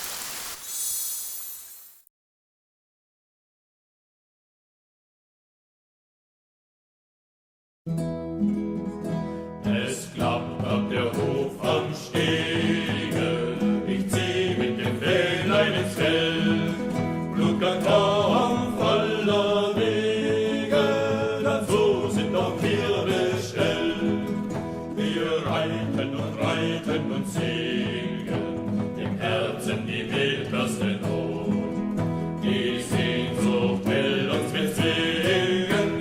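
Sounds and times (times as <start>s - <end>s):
acoustic guitar strummed and plucked: 7.9s - 36.0s
choir singing: 9.7s - 31.8s, 32.4s - 36.0s.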